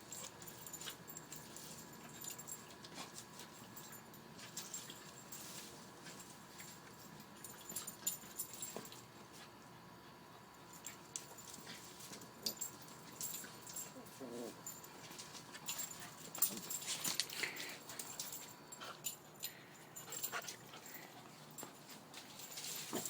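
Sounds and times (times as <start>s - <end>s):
dogs scuffling: 10.6s - 23.0s.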